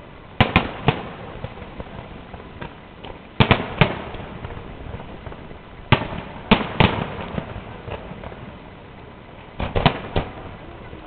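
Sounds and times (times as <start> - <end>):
fireworks bursting: 0.0 - 11.0.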